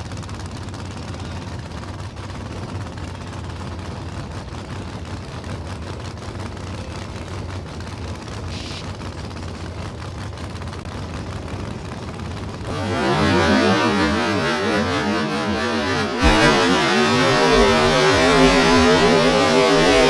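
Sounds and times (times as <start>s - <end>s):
race car engine rumbling: 0.2s - 20.0s
music: 15.8s - 20.0s.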